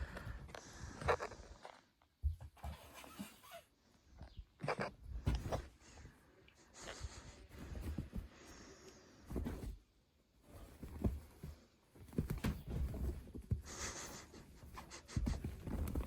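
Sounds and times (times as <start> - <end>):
bedding rustling: 5.0 - 16.0.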